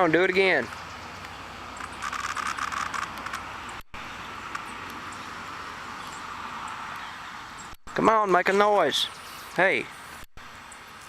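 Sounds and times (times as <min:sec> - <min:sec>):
cicada clicking buzz: 0:00.4 - 0:07.8
distant cicada chorus drone: 0:00.7 - 0:07.8.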